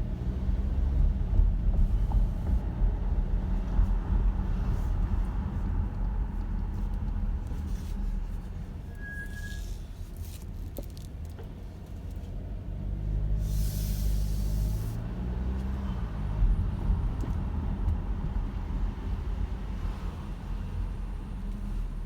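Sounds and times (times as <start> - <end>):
car rumble: 0.0 - 22.0
brake squeal: 7.6 - 10.6, 13.4 - 15.1
brake hissing: 13.4 - 15.0.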